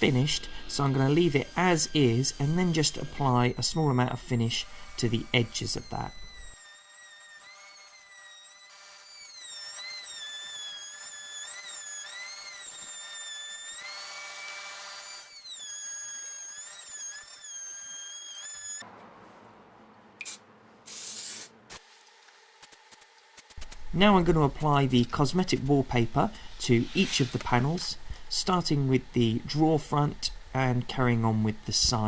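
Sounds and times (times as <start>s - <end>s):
electric router whining: 0.0s - 18.8s.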